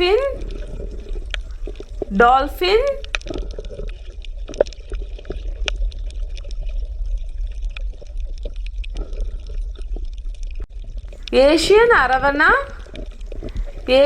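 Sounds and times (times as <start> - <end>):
water bubbling and trickling: 0.0 - 2.2, 3.0 - 14.0.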